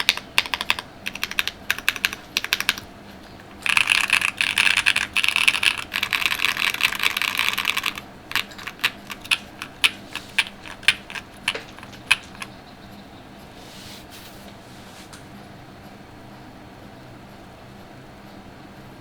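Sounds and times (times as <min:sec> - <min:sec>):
mechanical keyboard typing: 0:00.0 - 0:02.9, 0:03.5 - 0:12.5.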